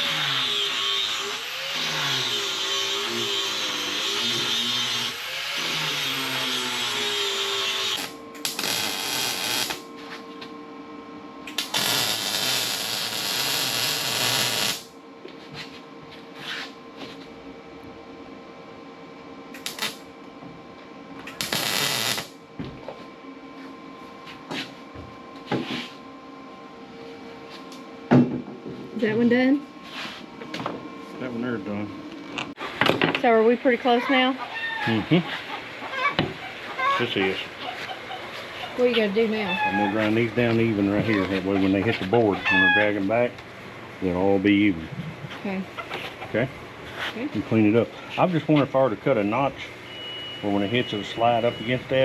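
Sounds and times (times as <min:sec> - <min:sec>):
handheld grinder on steel: 0:00.0 - 0:09.8, 0:11.5 - 0:14.8, 0:21.3 - 0:22.3.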